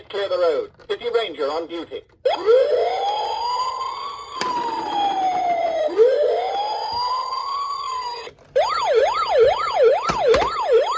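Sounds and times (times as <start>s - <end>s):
toy electronic siren: 2.2s - 10.9s.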